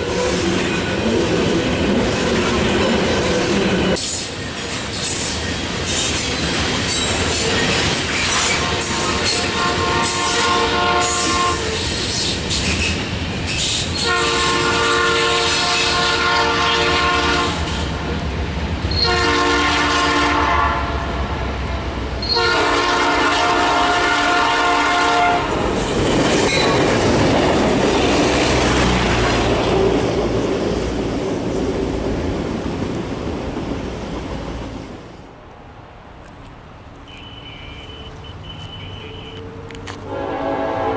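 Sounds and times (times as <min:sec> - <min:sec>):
train rumbling past: 0:00.0 - 0:40.9
locomotive horn blasts: 0:08.6 - 0:11.8, 0:14.0 - 0:17.6, 0:18.9 - 0:21.1, 0:22.2 - 0:25.5, 0:37.1 - 0:40.9.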